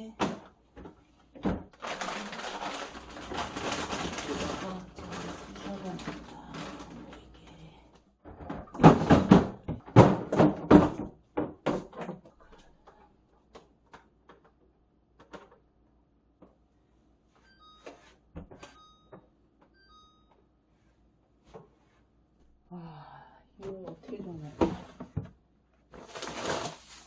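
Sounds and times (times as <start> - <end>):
containers clattering in refrigerator: 0.2 - 7.4, 8.3 - 12.6, 25.9 - 27.0
refrigerator shelves being moved: 1.4 - 7.4, 8.3 - 12.2, 25.9 - 27.0.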